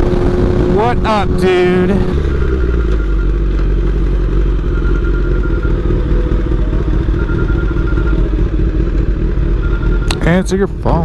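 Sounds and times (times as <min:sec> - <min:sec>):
wind rumble on microphone: 0:00.0 - 0:02.7
motorcycle engine running: 0:00.0 - 0:11.0.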